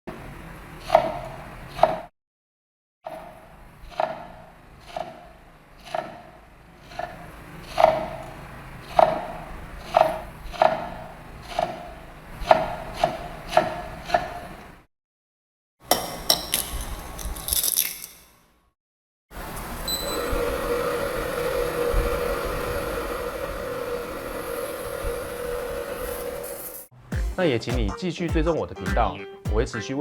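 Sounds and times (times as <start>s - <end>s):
knife chopping on cutting board: 0.9s - 2.1s, 3.1s - 8.2s, 8.8s - 14.5s.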